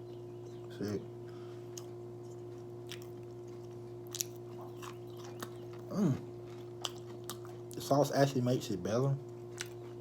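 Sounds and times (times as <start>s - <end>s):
person chewing crunchy food: 1.4s - 8.0s, 9.2s - 10.0s.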